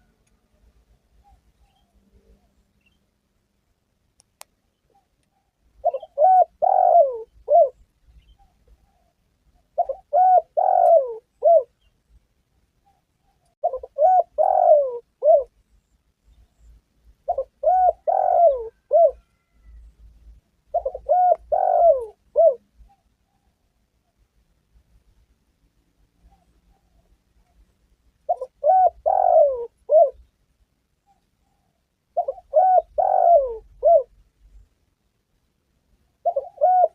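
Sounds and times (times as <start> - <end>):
dove cooing: 4.8 - 11.8, 12.8 - 15.6, 17.2 - 19.9, 20.6 - 23.8, 28.2 - 30.3, 31.0 - 34.2, 36.2 - 36.9.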